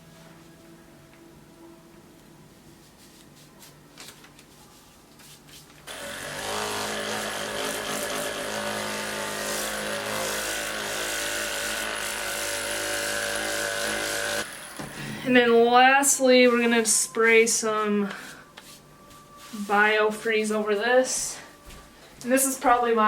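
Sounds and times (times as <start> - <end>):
small electric motor running: 5.9 - 14.8.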